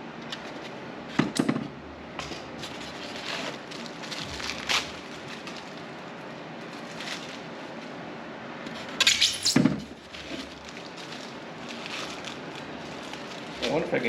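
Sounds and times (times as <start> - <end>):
steady background hum: 0.0 - 14.0
packaging crinkling rustle: 2.6 - 8.0, 9.9 - 14.0.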